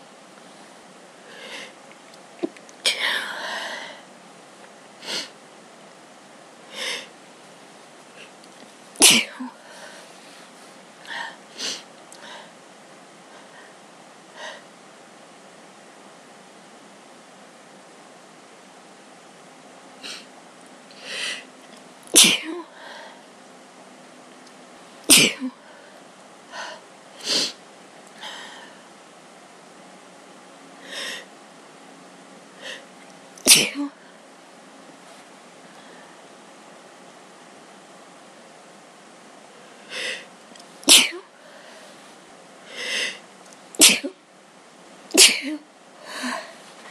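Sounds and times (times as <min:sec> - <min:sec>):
person sneezing: 0:09.0 - 0:09.6, 0:22.1 - 0:22.7, 0:25.1 - 0:25.6, 0:32.6 - 0:34.0, 0:40.9 - 0:41.3, 0:43.8 - 0:44.2, 0:45.2 - 0:46.6.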